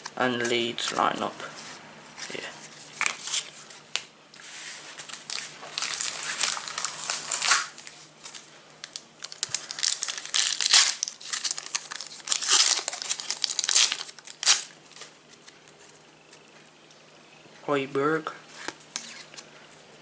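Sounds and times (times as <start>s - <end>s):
foil wrapper tearing and crinkling: 5.1s - 15.1s.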